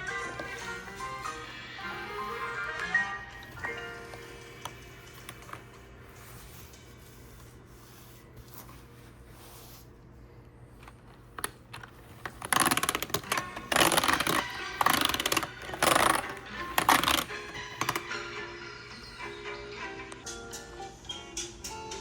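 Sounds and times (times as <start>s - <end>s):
handling noise: 10.7s - 18.1s
small hard objects rattling: 12.3s - 18.0s.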